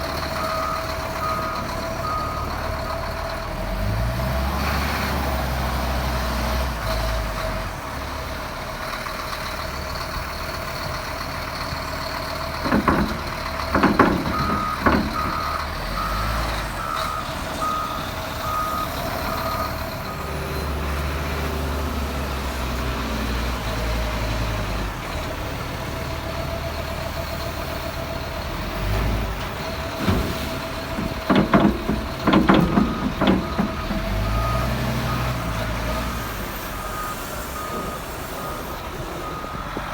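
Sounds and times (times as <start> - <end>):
diesel heavy equipment running: 0.0 - 39.9
reversing alarm beeping: 0.4 - 2.6, 12.7 - 20.3, 31.3 - 35.5, 36.7 - 39.8
loud clanking and scraping: 12.5 - 16.7, 28.9 - 35.9.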